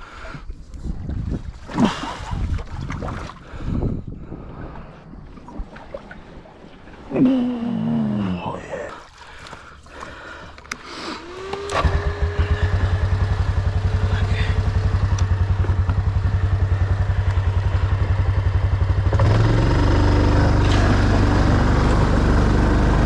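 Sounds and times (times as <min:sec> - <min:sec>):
electric starter cranking: 0:11.2 - 0:13.6, 0:19.1 - 0:23.0
engine idling: 0:11.2 - 0:23.0.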